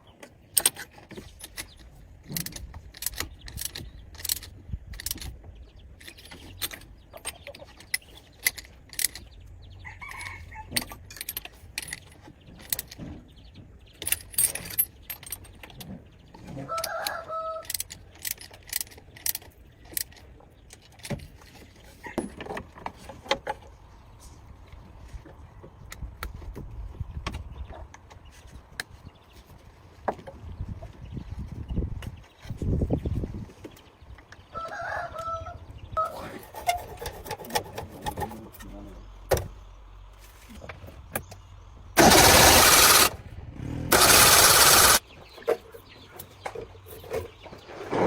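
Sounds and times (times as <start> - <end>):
metal tools clinking: 14.0 - 15.7, 42.0 - 43.1, 43.9 - 45.0.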